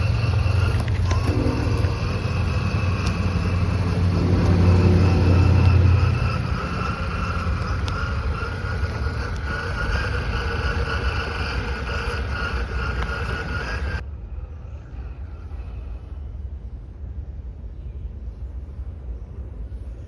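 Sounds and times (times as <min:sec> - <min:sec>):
electric motor and gears whining: 0:00.0 - 0:14.0
outdoor background noise: 0:00.0 - 0:20.0.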